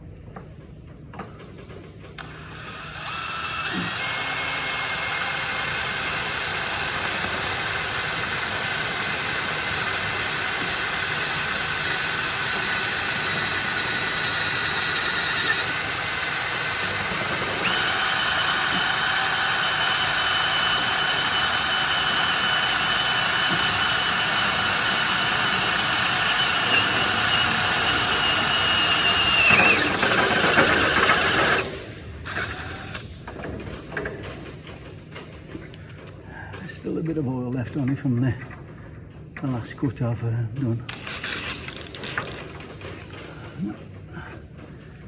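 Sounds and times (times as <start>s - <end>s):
power drill drilling: 2.2s - 33.4s, 40.9s - 43.5s.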